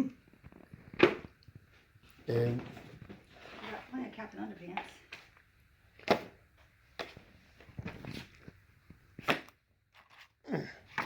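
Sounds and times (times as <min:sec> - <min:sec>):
books slapping down: 0:09.2 - 0:09.5.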